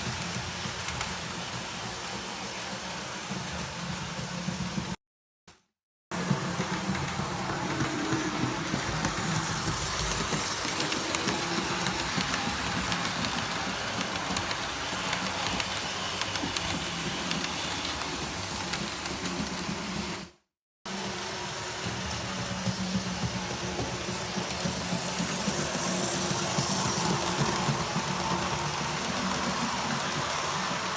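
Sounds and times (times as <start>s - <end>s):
wheels clicking over rails: 6.2s - 20.2s, 20.9s - 30.9s
model train motor hum: 6.3s - 20.2s, 20.9s - 30.9s.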